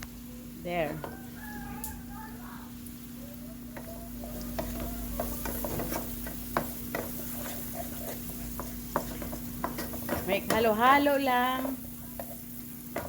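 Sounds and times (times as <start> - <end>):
food sizzling in a pan: 0.0 - 13.0
utensil scraping a pan: 4.3 - 13.0.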